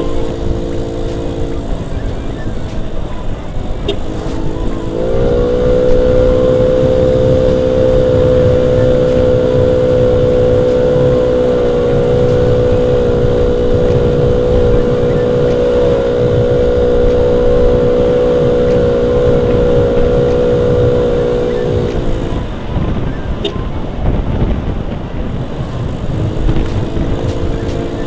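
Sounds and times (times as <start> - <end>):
scooter engine running: 0.0 - 28.0
wind and road rumble: 0.0 - 28.0.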